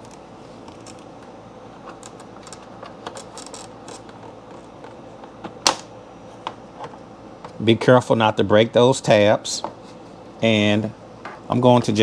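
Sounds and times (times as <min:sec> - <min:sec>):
low background hum: 0:00.0 - 0:12.0
plastic cover clicking and rattling: 0:01.9 - 0:05.9.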